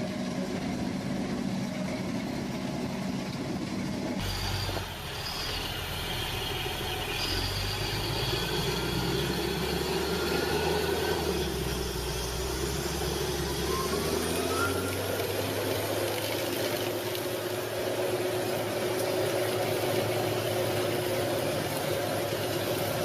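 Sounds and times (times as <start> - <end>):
heavy machinery engine hum: 0.0 - 23.0
high-pitched metallic squeals: 4.2 - 16.0.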